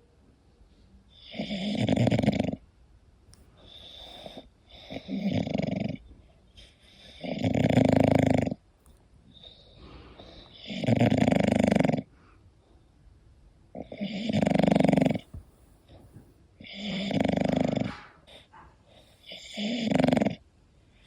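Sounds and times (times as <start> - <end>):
dog snoring: 1.1 - 2.6, 3.6 - 8.6, 9.3 - 12.1, 13.7 - 21.0
soft breath: 3.4 - 5.3, 6.1 - 7.3, 9.2 - 10.8, 12.0 - 12.9.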